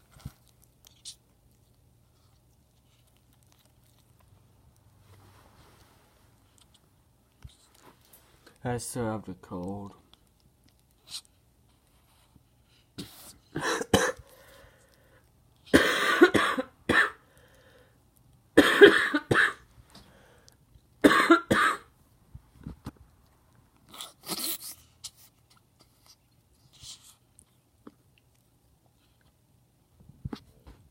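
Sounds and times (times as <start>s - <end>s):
person coughing: 13.5s - 14.3s, 15.7s - 17.2s, 18.6s - 19.6s, 21.0s - 21.9s.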